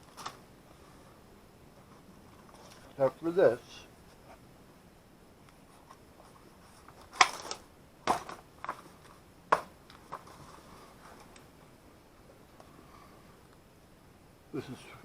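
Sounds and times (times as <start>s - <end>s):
papers and small parts handled: 0.0s - 0.4s, 1.8s - 3.0s, 5.4s - 9.2s, 9.8s - 11.5s.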